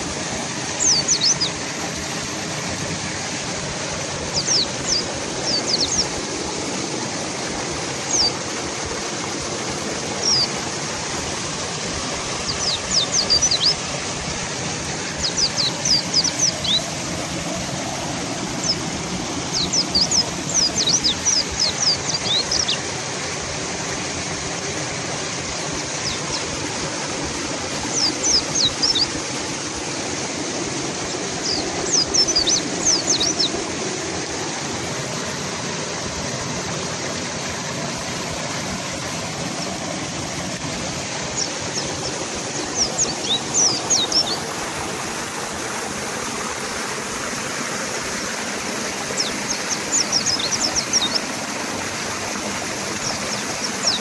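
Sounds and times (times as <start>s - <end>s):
fast-flowing river rushing: 0.0s - 54.0s
bird chirping: 0.8s - 1.6s, 4.3s - 6.3s, 8.0s - 8.4s, 10.2s - 10.6s, 12.3s - 13.9s, 15.1s - 16.9s, 17.8s - 22.8s, 27.8s - 29.2s, 31.0s - 33.7s, 41.3s - 44.6s, 49.0s - 51.3s, 52.9s - 54.0s.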